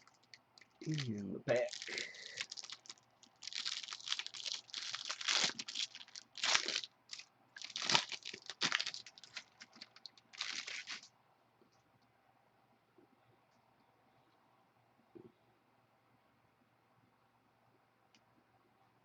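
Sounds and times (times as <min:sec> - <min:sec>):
wrappers tearing and crinkling: 0:00.0 - 0:11.1.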